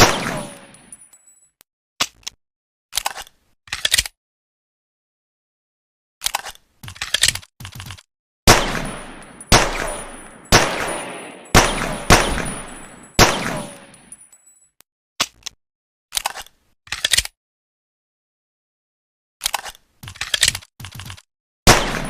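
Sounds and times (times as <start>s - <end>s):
echoing gunshots: 0.0s - 0.8s, 8.5s - 14.1s, 21.7s - 22.0s.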